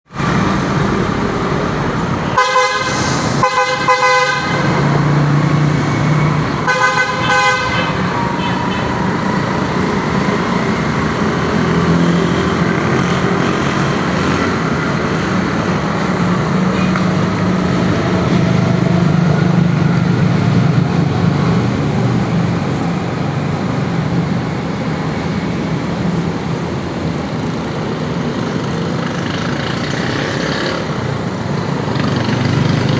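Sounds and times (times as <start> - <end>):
traffic noise: 0.0 - 32.9
vehicle engine hum: 0.1 - 32.9
horn honks: 2.3 - 5.1, 6.2 - 9.2.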